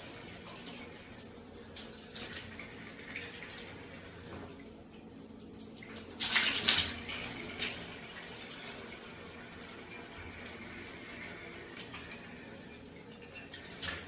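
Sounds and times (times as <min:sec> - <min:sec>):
water running from a tap: 0:00.0 - 0:14.0
water splashing: 0:05.7 - 0:12.4.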